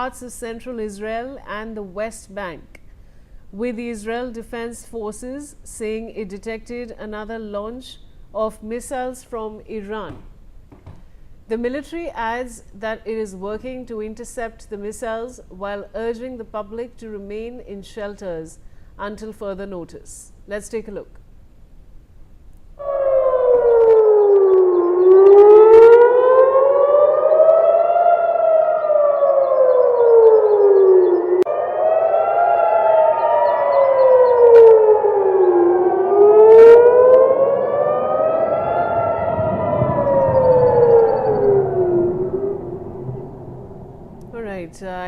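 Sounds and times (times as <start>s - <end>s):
air-raid siren wailing: 22.8s - 44.5s.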